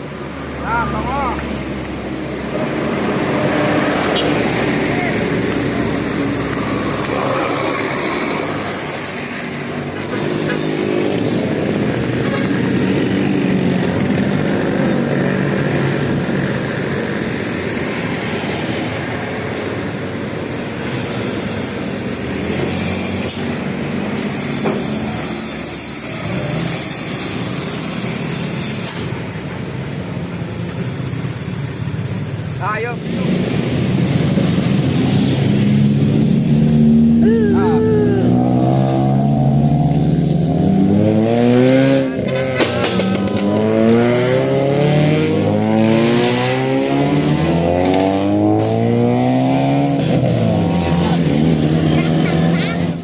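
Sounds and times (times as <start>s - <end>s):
roadside traffic noise: 0.0s - 53.0s.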